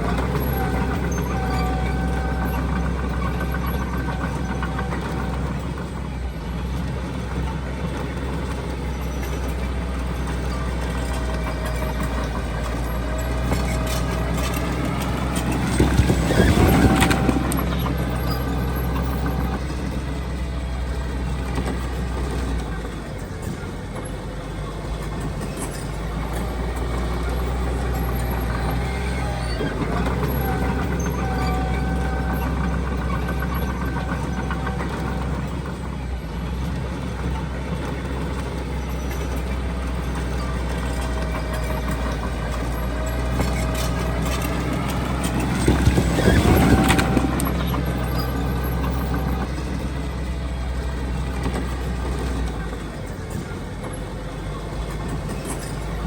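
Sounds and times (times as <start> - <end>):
diesel machinery engine drone: 0.0 - 56.0.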